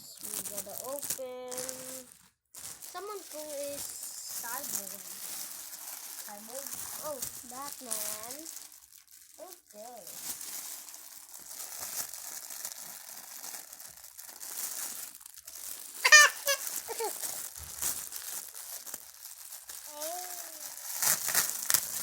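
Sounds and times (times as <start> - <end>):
packaging crinkling and tearing: 0.0 - 22.0
high-pitched vocal squeal: 16.0 - 17.2.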